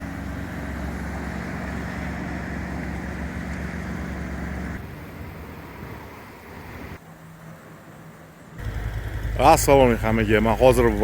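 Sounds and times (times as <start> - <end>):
car engine running: 8.6 - 11.0.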